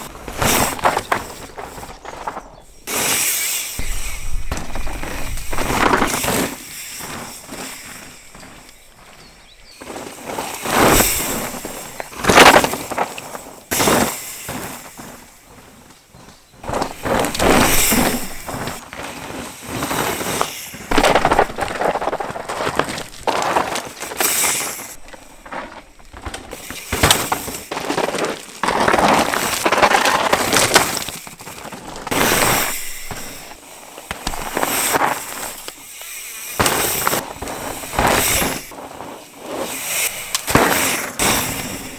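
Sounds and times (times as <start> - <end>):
tyres crunching over loose stones: 0.0 - 3.0, 3.8 - 39.2
bike clattering knocks: 16.6 - 18.8, 20.9 - 24.3.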